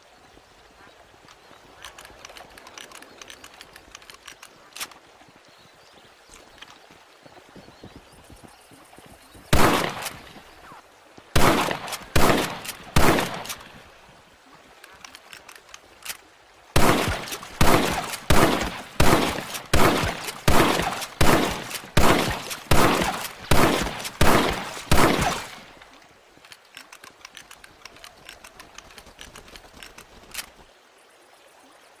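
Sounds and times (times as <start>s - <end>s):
rifle shots: 9.5s - 10.2s, 11.4s - 13.6s, 16.8s - 25.6s.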